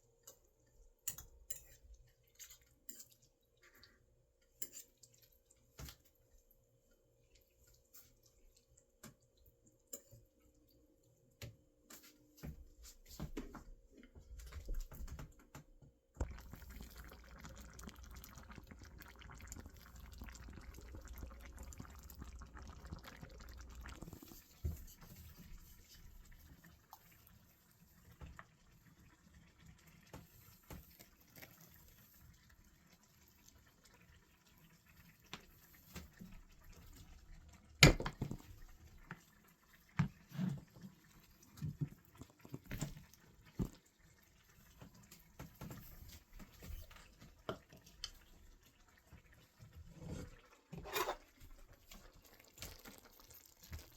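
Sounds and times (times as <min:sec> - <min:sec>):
water running: 0:16.2 - 0:53.9.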